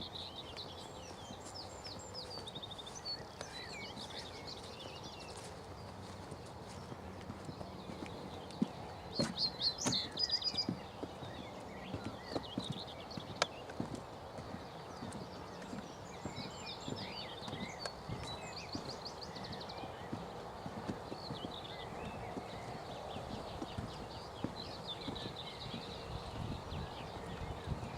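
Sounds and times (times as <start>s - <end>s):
footsteps on a path: 0.0s - 27.9s
birds singing high trills: 7.9s - 13.8s, 14.4s - 27.9s.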